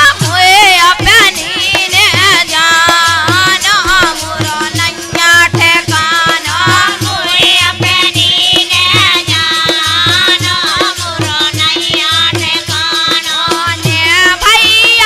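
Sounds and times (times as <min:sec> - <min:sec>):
hand drum beat: 0:00.0 - 0:15.0.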